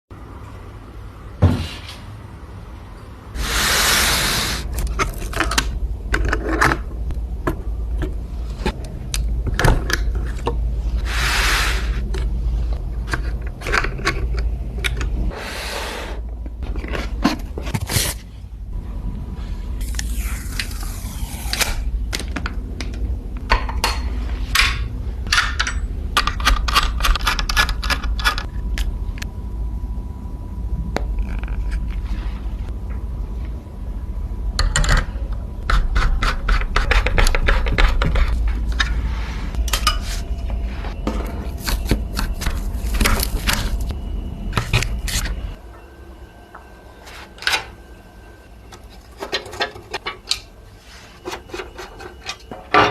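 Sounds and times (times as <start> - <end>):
low rumble: 37.8 - 46.8.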